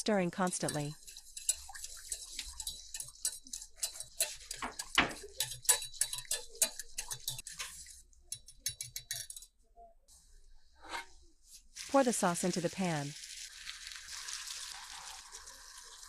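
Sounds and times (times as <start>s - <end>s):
spoon tapping against pan: 0.4s - 7.4s, 8.3s - 9.5s
boiling sauce hissing: 11.6s - 16.0s.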